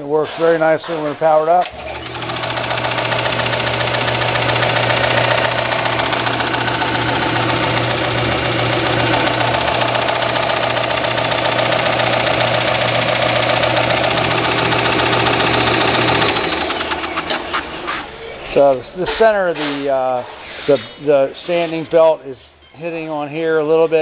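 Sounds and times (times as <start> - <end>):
sanding belt hitting frame: 0.3 - 18.0
belt sander motor hum: 1.6 - 17.9.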